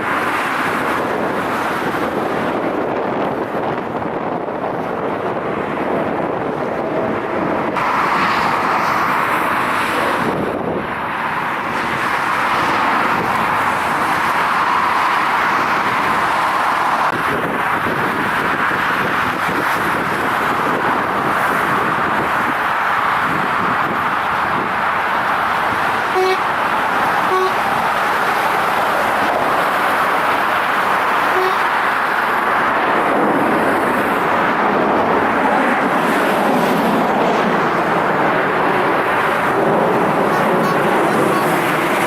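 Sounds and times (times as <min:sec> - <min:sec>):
jet engines rushing: 0:00.0 - 0:42.0.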